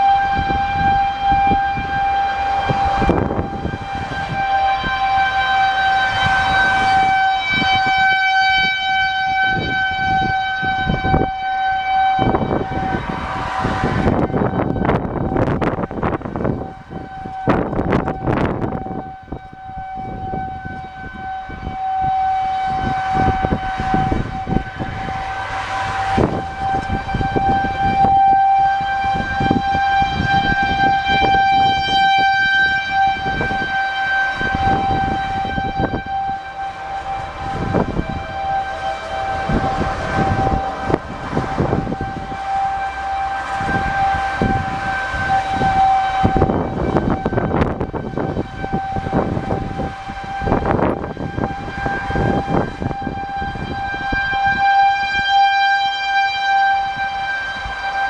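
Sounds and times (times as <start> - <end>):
warning siren wailing: 0.0 - 58.0
low rumble: 11.9 - 19.0, 22.1 - 30.9, 33.0 - 51.6.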